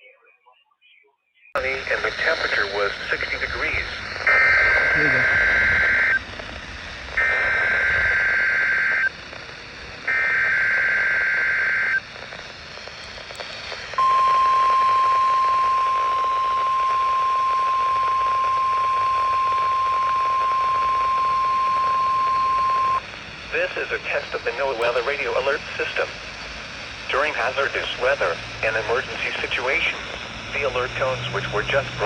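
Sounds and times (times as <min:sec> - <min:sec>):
buzzy warbling data screech: 0:01.6 - 0:06.2
steady warning alarm tone: 0:04.2 - 0:06.2, 0:07.2 - 0:09.1, 0:10.1 - 0:12.0, 0:14.0 - 0:23.0.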